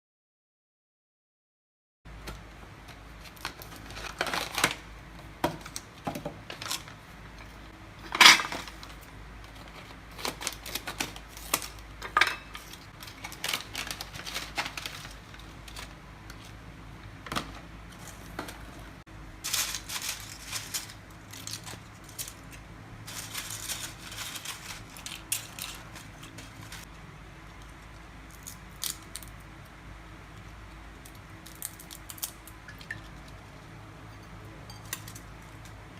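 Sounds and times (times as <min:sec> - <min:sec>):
utensils and dishes clinking: 0:08.1 - 0:08.8, 0:12.0 - 0:14.9, 0:34.0 - 0:35.7.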